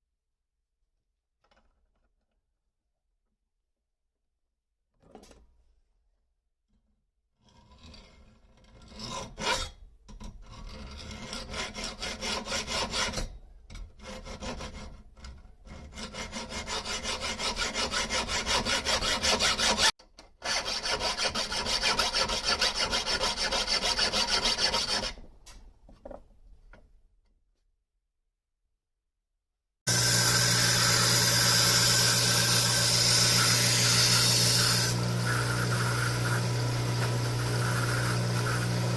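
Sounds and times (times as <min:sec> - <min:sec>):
rasping rub on steel: 0:14.0 - 0:19.9, 0:20.5 - 0:25.2.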